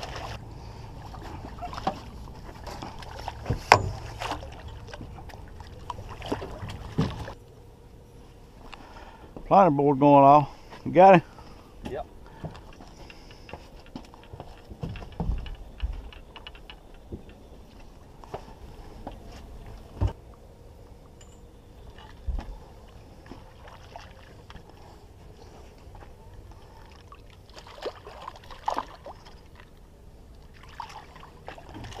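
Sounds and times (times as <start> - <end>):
water sloshing: 0.0 - 7.4, 21.8 - 32.0
faint steady hum: 0.0 - 32.0.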